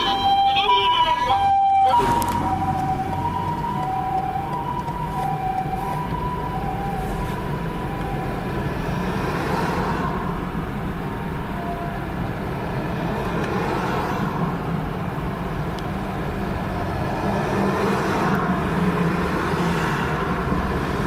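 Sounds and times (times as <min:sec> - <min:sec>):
two-tone ambulance siren: 0:00.0 - 0:09.0, 0:11.5 - 0:12.2
road traffic hum: 0:00.0 - 0:21.0.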